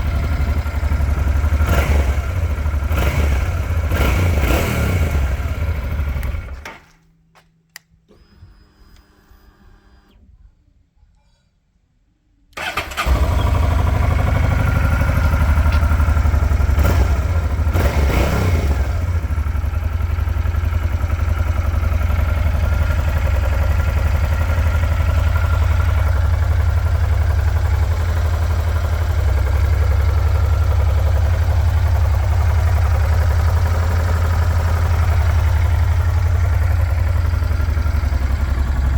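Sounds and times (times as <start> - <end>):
motorcycle engine idling: 0.0 - 6.6, 12.6 - 38.9.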